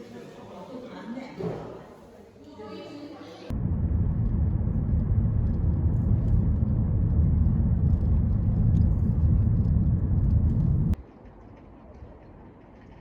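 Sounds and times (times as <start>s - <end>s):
low rumble of moving vehicle: 3.5s - 11.0s.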